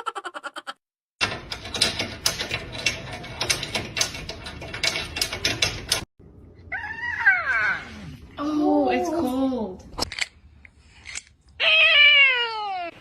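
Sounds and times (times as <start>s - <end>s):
rapid irregular clicking: 1.2s - 6.1s
cat meowing: 11.6s - 13.0s.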